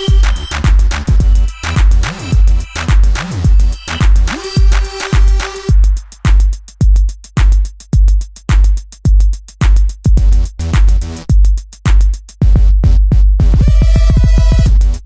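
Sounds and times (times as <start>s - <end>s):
sustained bass: 0.0s - 6.6s, 10.1s - 11.6s, 12.4s - 15.0s
electronic music: 0.0s - 6.7s, 10.2s - 11.4s, 12.0s - 15.0s
heavy kick drum beat: 0.0s - 15.0s
ticking hi-hats: 0.0s - 15.0s.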